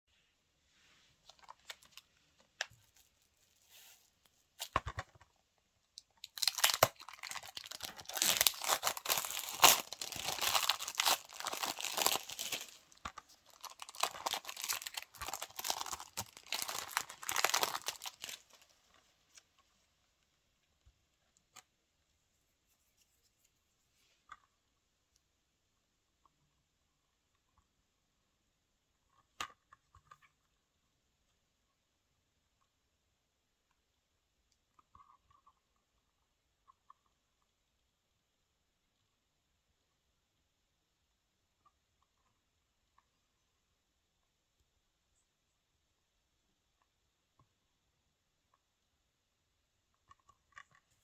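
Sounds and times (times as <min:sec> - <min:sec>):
plastic packaging tearing: 0:06.2 - 0:18.6.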